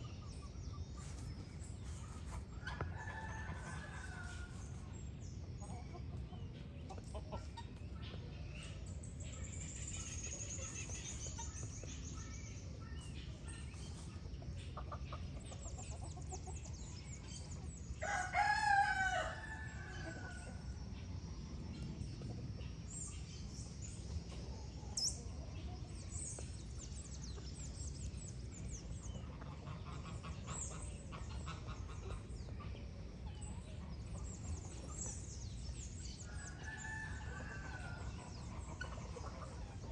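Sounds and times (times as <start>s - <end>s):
low background hum: 0.0s - 39.9s
small birds chirping: 0.0s - 39.9s
hens clucking: 5.6s - 8.4s, 13.3s - 16.7s, 28.8s - 34.0s, 37.3s - 39.9s
rooster crowing: 18.0s - 20.3s.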